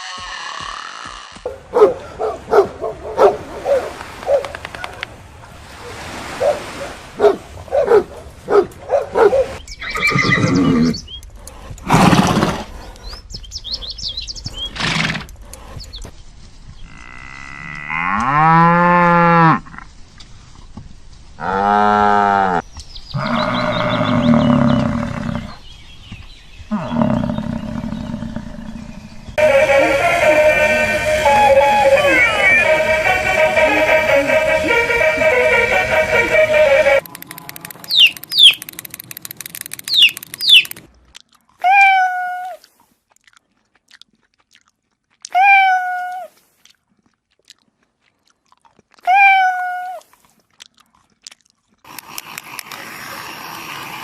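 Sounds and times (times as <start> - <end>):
long rising and falling animal calls: 29.4 - 40.8.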